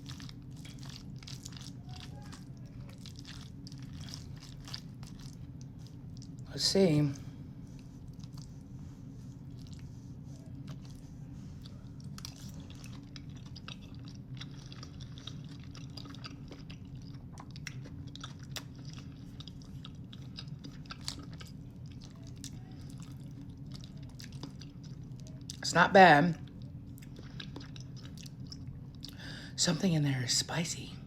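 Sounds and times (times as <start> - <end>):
person chewing food: 0.0 - 25.6, 26.4 - 29.2.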